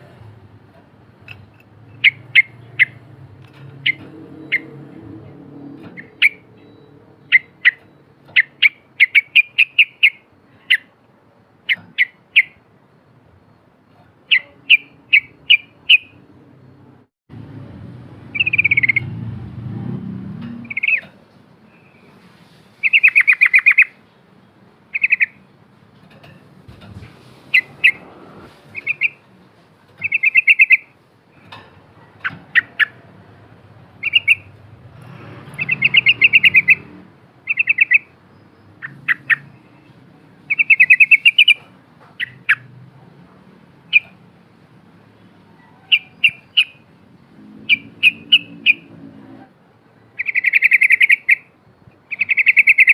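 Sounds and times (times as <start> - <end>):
bird chattering song: 1.2 - 11.0, 11.6 - 16.8, 18.3 - 19.2, 20.6 - 22.2, 22.8 - 24.1, 24.8 - 25.6, 27.5 - 28.1, 28.7 - 29.2, 30.0 - 33.1, 34.0 - 34.7, 35.5 - 42.7, 43.9 - 44.2, 45.2 - 49.0, 50.1 - 52.9.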